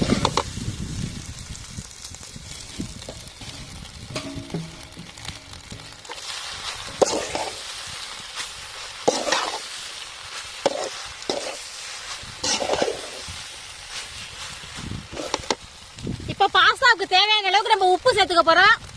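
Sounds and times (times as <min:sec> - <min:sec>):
food sizzling in a pan: 0:00.0 - 0:18.9
spoon scraping a pan: 0:03.0 - 0:14.3, 0:15.1 - 0:15.6.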